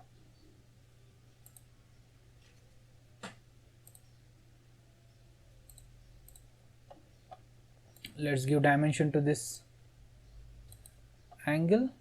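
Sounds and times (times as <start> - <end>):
computer mouse clicking: 1.4 - 1.7, 3.2 - 4.1, 5.7 - 8.2, 10.7 - 11.0.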